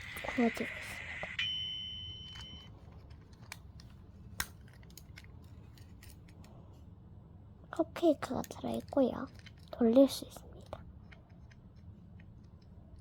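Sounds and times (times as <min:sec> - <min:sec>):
toy microwave electronic chime: 0:00.0 - 0:02.7.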